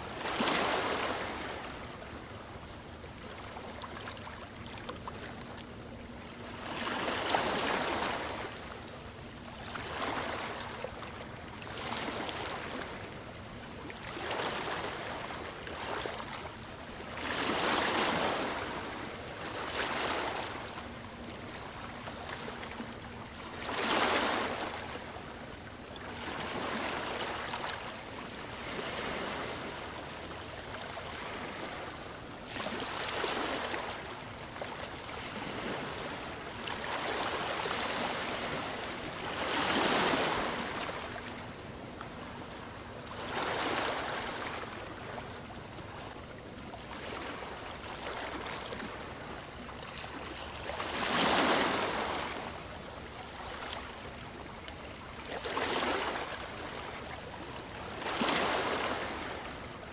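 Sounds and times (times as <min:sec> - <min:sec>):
sea waves washing ashore: 0:26.2 - 0:34.3, 0:35.1 - 0:46.0, 0:50.0 - 0:54.6.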